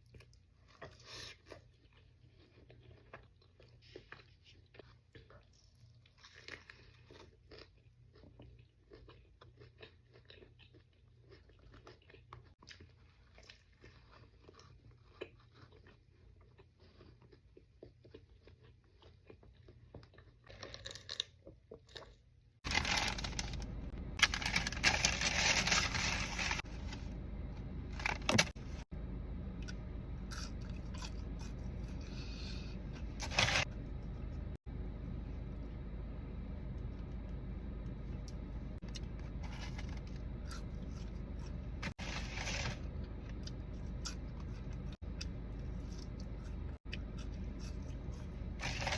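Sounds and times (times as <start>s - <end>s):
chewing and crunching food: 0.0s - 27.0s, 29.6s - 35.9s, 36.6s - 48.9s
steady low rumble: 22.6s - 48.9s.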